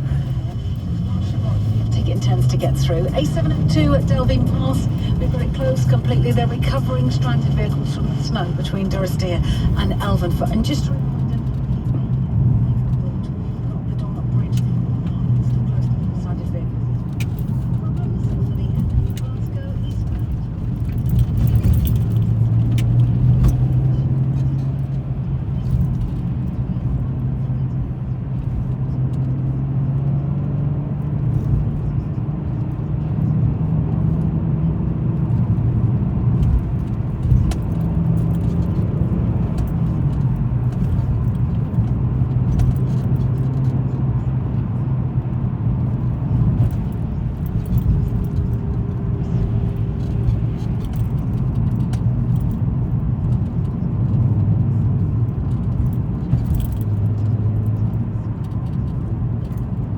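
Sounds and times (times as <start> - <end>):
car engine hum: 0.0 - 59.9
tyre and road noise: 0.0 - 59.9.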